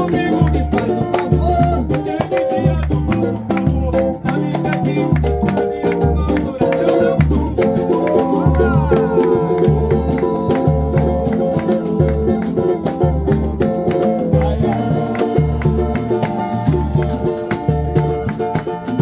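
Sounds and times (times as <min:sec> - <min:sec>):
jingling tambourine and shaker: 0:00.0 - 0:19.0
held melodic notes: 0:06.8 - 0:19.0
low drum beating: 0:07.2 - 0:18.9.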